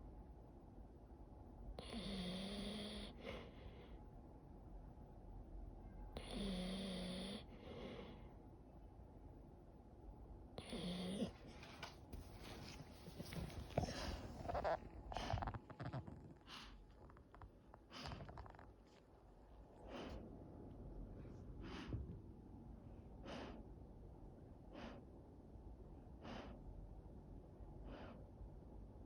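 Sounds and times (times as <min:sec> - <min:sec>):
puppy snoring and breathing: 0:01.7 - 0:04.0, 0:06.1 - 0:08.4, 0:10.6 - 0:19.0, 0:19.6 - 0:20.4, 0:21.0 - 0:22.2, 0:23.0 - 0:23.8, 0:24.6 - 0:25.2, 0:26.1 - 0:26.9, 0:27.7 - 0:28.4.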